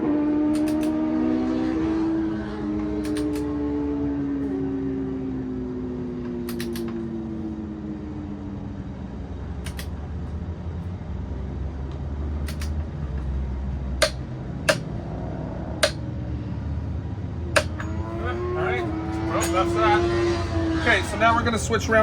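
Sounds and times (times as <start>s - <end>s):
metallic tool clicks: 0.5s - 1.0s, 3.0s - 3.5s, 6.5s - 6.9s, 9.6s - 10.0s, 12.5s - 12.8s, 14.0s - 15.0s, 15.8s - 16.0s, 17.6s - 18.1s
tool strikes: 14.0s - 15.0s, 15.8s - 16.0s, 17.6s - 18.4s.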